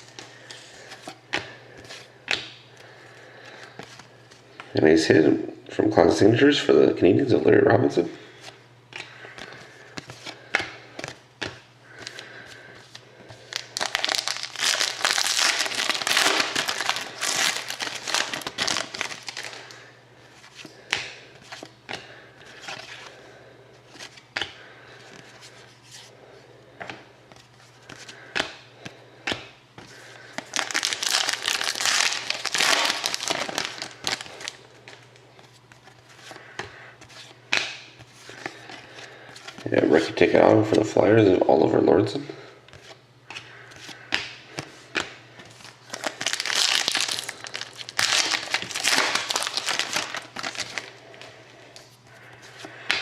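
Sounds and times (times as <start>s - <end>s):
wrappers tearing and crinkling: 13.4s - 19.8s, 30.3s - 34.7s, 45.6s - 51.0s.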